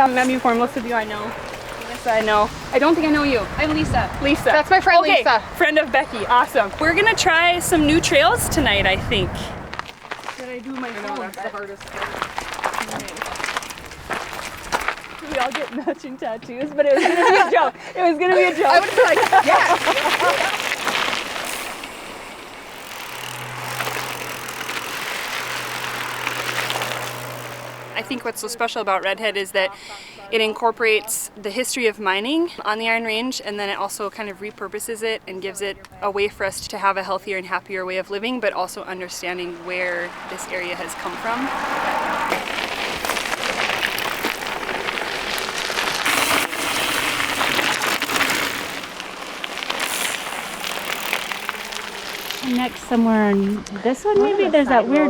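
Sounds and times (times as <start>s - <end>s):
bike tyres and drivetrain on dirt: 0.0s - 55.0s
steady low hum: 17.1s - 29.3s.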